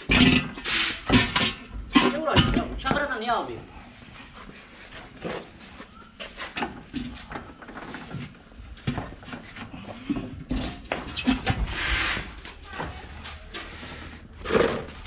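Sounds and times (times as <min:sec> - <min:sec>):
knocks clicks and scrapes: 0:06.2 - 0:15.0.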